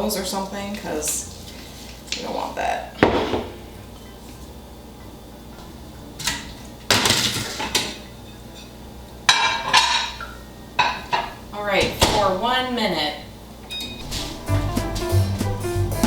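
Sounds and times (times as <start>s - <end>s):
ceramic dishes clattering: 9.3s - 10.2s.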